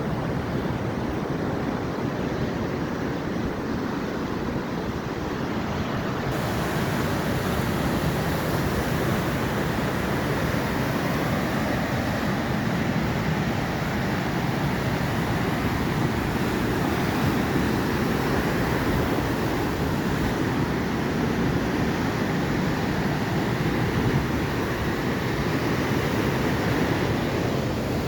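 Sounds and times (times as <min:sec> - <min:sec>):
ocean surf waves breaking: 0:00.0 - 0:28.0.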